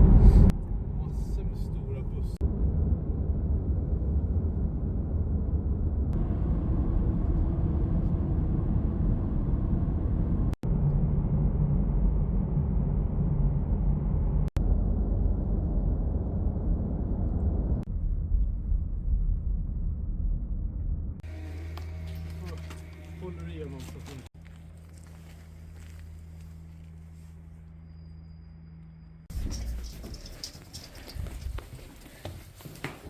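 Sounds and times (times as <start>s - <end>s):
car road and engine rumble: 0.0s - 32.3s.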